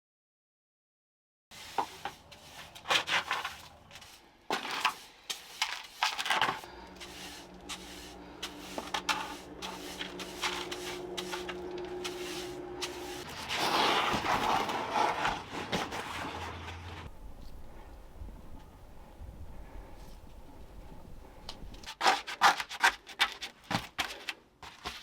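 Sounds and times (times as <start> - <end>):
hard objects knocking and scraping: 1.7 - 17.1
steady low hum: 6.6 - 13.5, 16.2 - 21.9.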